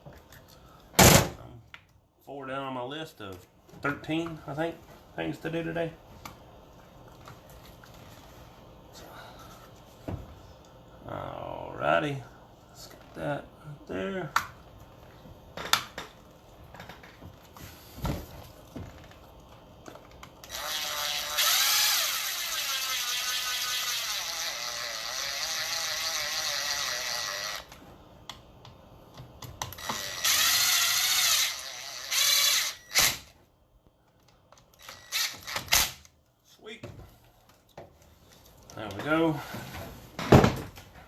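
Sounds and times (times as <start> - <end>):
small motorized tool running: 20.5 - 27.7.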